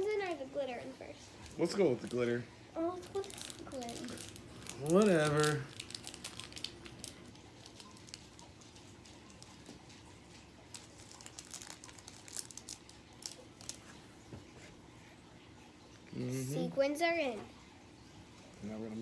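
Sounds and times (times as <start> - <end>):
packaging crinkling: 1.4 - 14.0.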